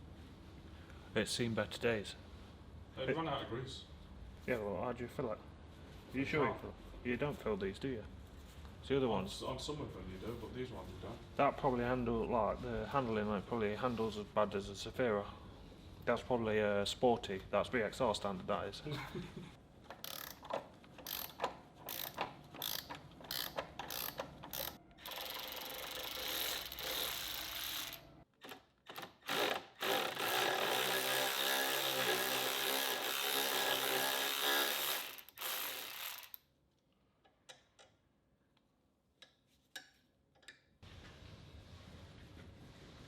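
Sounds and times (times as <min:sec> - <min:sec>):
ratchet wrench clicking: 0:19.9 - 0:28.0, 0:29.3 - 0:36.5.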